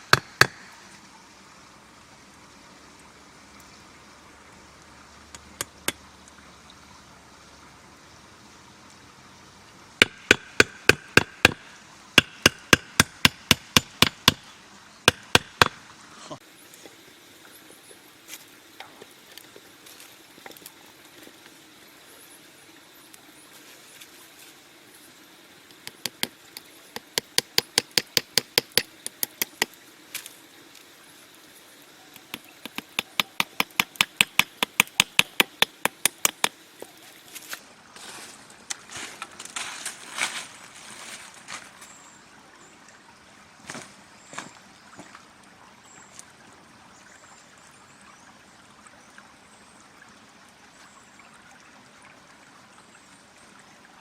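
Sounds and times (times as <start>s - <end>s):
rapid sharp tool knocks: 10.0s - 11.6s, 32.3s - 36.6s.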